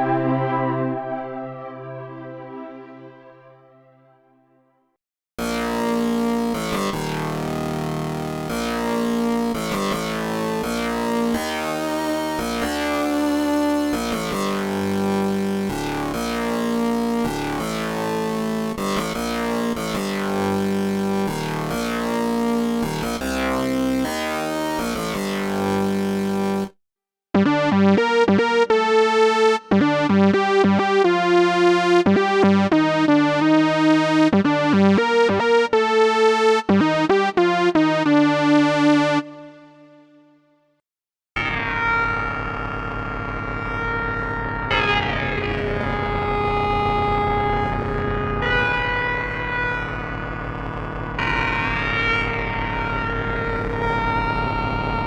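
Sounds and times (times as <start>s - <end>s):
synthesizer short notes: 0.0s - 2.7s, 5.4s - 26.8s, 27.4s - 39.8s
synthesizer held chords: 0.0s - 3.8s, 5.4s - 26.8s, 27.4s - 40.3s, 41.5s - 55.0s.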